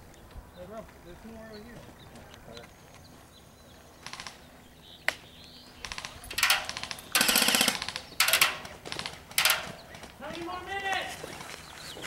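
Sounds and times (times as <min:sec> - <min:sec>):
airsoft gun bursts: 0:05.8 - 0:09.8.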